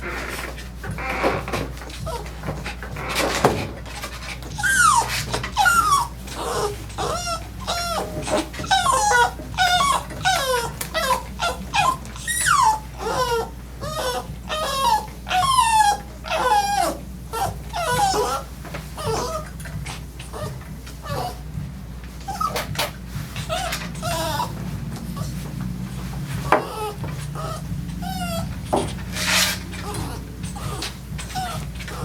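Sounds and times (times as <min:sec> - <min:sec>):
dog whining and yelping: 0:01.8 - 0:32.0.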